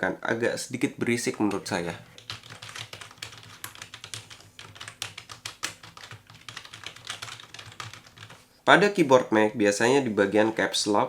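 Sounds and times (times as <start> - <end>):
keyboard typing clicks: 1.5 - 8.3.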